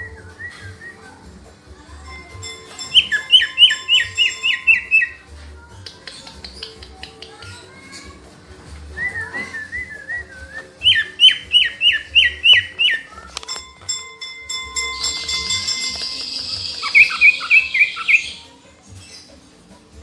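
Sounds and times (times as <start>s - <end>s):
songbird singing: 2.4s - 7.7s, 9.0s - 13.6s, 14.7s - 19.4s.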